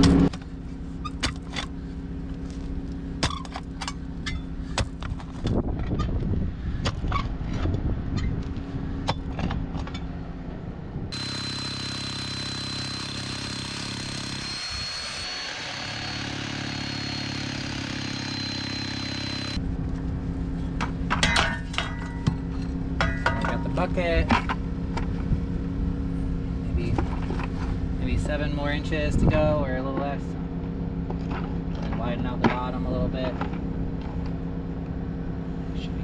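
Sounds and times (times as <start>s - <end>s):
steady engine hum: 0.0s - 36.0s
thin high whine: 11.1s - 19.6s.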